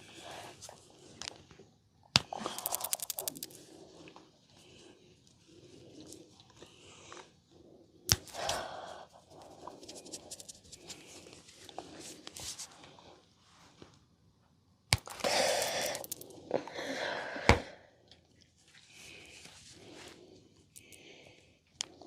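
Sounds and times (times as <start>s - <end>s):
hands rubbing hair and skin: 2.6s - 3.6s, 9.3s - 12.7s.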